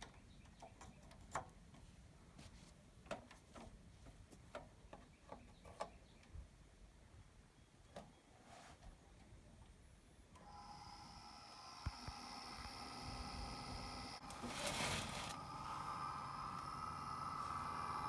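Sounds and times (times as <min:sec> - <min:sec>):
computer fans whirring: 0:10.2 - 0:18.0.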